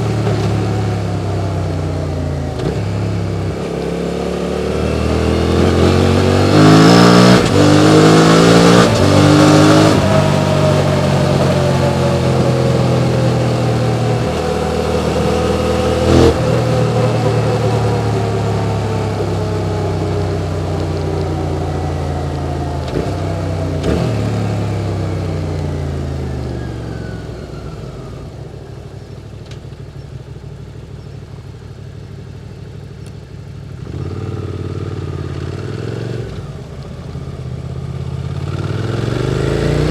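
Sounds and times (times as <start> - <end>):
motorcycle engine accelerating: 0.0 - 39.9
engine low idle: 9.9 - 34.0.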